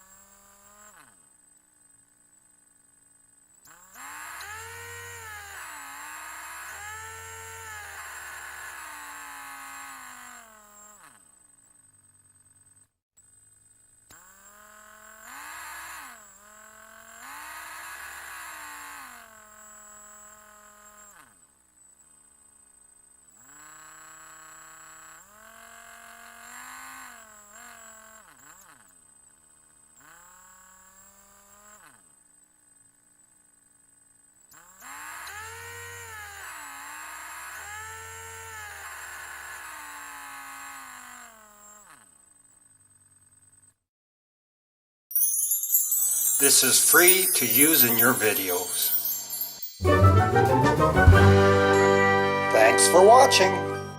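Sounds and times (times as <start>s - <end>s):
mini drill motor whining: 0.0s - 1.2s, 3.6s - 12.9s, 13.5s - 43.7s, 45.6s - 49.8s
thin high whine: 45.6s - 53.9s.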